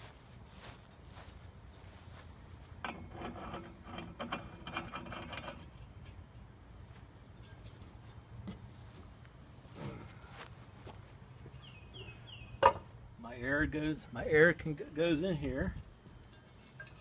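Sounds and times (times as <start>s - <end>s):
hard parts scraping and clinking: 2.8s - 6.6s, 7.4s - 8.2s, 14.2s - 17.0s.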